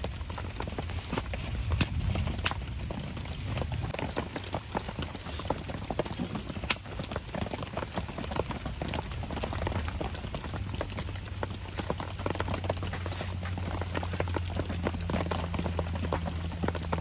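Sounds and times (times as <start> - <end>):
campfire crackling: 0.0 - 17.0
sharp crack of fire: 1.0 - 4.0, 6.4 - 7.1.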